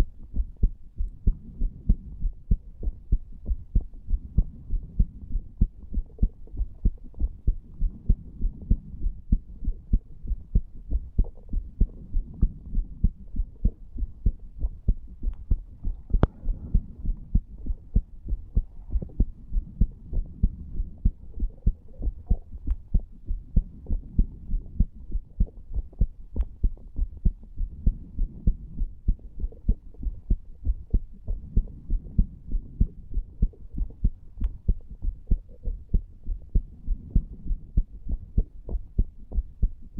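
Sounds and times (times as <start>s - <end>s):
muffled heartbeat thumping: 0.0s - 39.9s
faint ticks: 33.6s - 34.6s.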